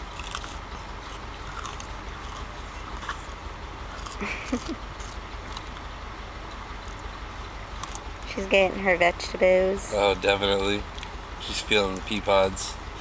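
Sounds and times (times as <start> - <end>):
puppy chewing pea pod: 0.0 - 8.3.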